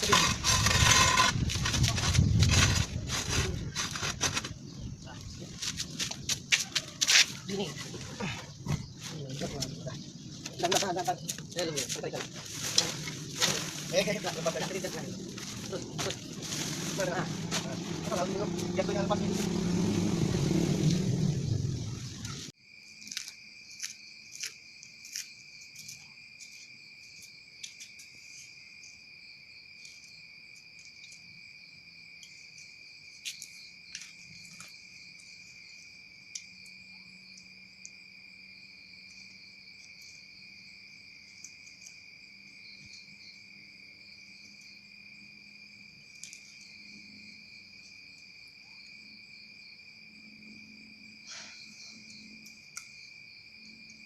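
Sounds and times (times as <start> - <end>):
insect chorus trilling: 0.0 - 54.0
loud noise cutting off: 16.3 - 22.5.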